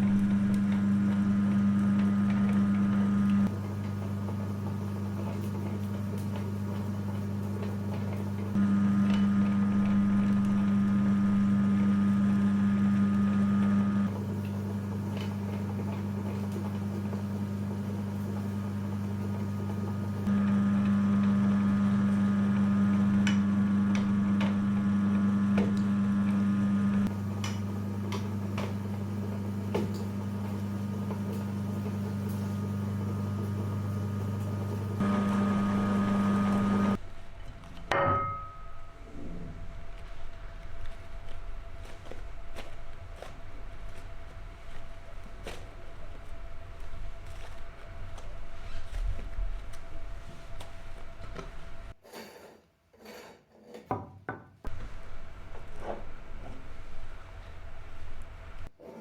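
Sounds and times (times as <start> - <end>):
electric meat grinder motor hum: 0.0 - 37.0.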